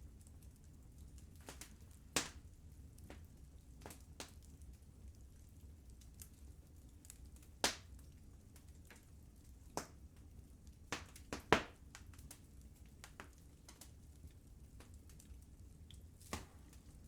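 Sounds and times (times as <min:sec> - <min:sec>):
fire crackling ticks: 0:00.1 - 0:17.0
wood fire pops: 0:01.4 - 0:04.5, 0:07.0 - 0:09.0, 0:10.9 - 0:14.0, 0:15.9 - 0:17.0.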